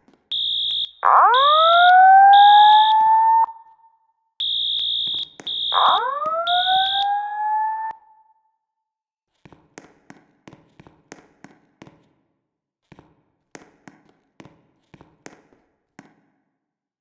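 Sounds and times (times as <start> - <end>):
fire alarm beeps: 0.3 - 3.8, 4.4 - 8.2.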